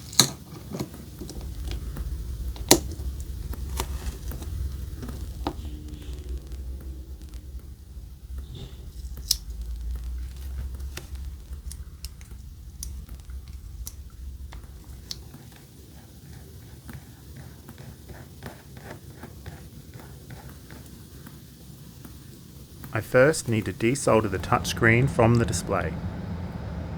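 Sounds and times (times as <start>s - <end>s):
low hum: 0.5s - 16.8s, 22.8s - 26.9s.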